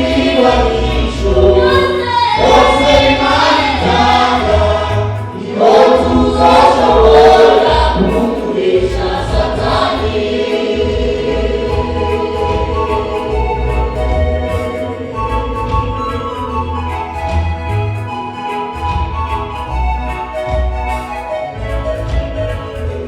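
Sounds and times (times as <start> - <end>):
choir singing gospel: 0.0 - 23.0.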